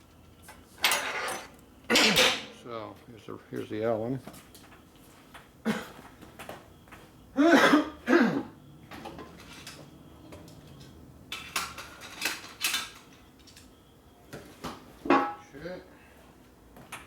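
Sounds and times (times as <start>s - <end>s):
metallic clatters: 0.8s - 2.7s
man clearing throat: 1.9s - 2.3s, 5.6s - 6.0s, 7.4s - 8.5s.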